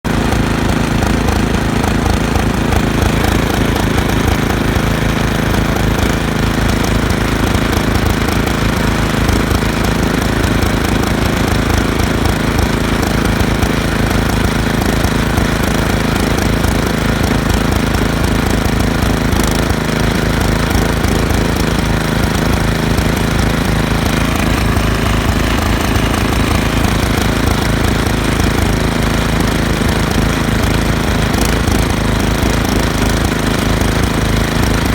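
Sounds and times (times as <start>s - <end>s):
snowblower engine running: 0.1s - 34.9s.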